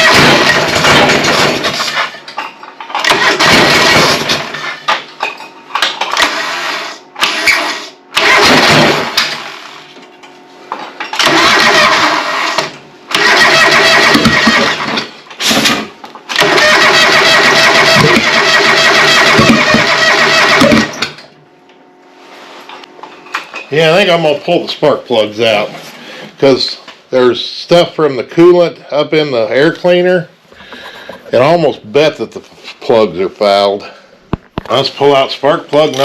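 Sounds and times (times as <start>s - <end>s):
engine firing in uneven spurts: 0.0s - 2.1s, 2.9s - 4.8s, 6.0s - 9.7s, 11.1s - 21.3s
engine cranking on starter: 0.0s - 2.2s, 2.9s - 4.7s, 6.0s - 9.7s, 11.1s - 21.3s.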